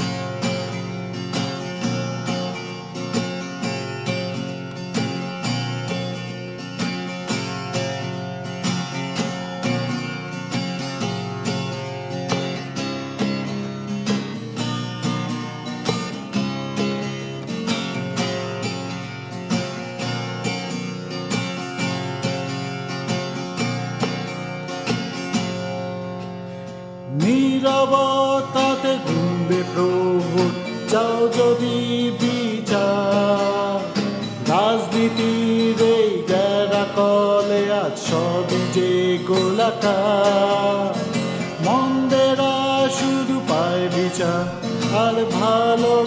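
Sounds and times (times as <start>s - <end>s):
acoustic guitar strumming: 0.0s - 46.0s
person singing: 27.1s - 46.0s.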